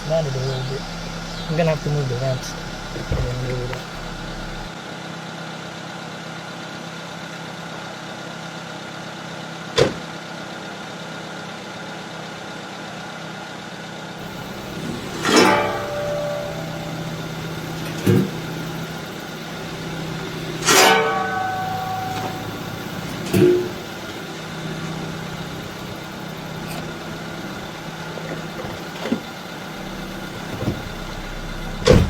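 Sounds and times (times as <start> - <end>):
engine knocking: 0.0 - 4.7, 21.7 - 32.0
car engine idling: 0.0 - 4.8, 14.2 - 32.0.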